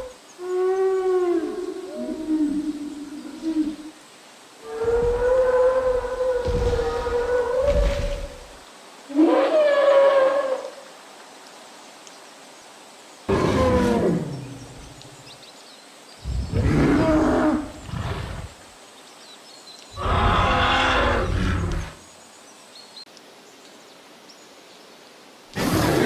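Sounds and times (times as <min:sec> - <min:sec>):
dinosaur roars: 0:13.3 - 0:14.6, 0:16.3 - 0:18.6, 0:20.0 - 0:22.0.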